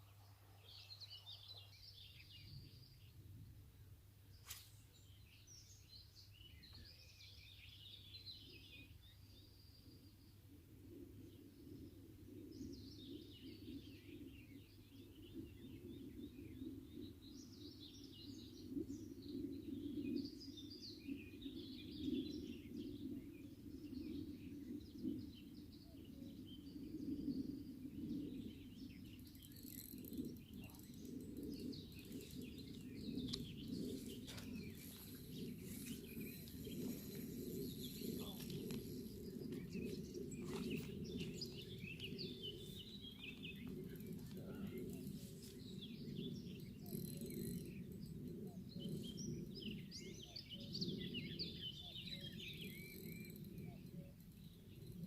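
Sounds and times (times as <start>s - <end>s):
small birds chirping: 12.7s - 55.0s.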